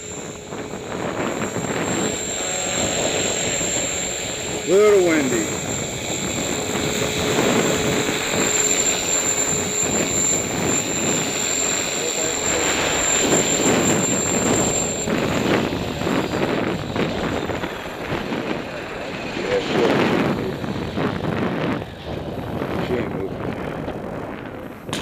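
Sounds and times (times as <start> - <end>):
helicopter rotor noise: 0.0 - 25.0
high-pitched motor and gear whine: 0.0 - 25.0
wind buffeting microphone: 0.0 - 25.0.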